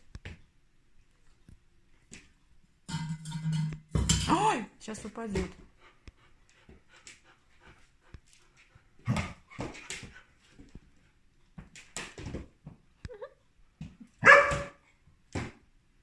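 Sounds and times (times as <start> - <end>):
puppy barking and yelping: 14.2 - 14.8.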